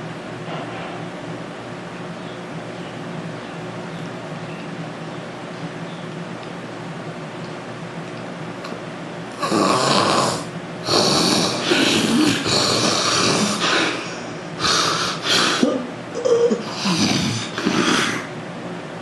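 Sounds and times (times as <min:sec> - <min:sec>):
man snoring heavily: 0:09.3 - 0:15.8, 0:16.6 - 0:18.3
pitched snort: 0:09.4 - 0:15.8, 0:16.6 - 0:18.3.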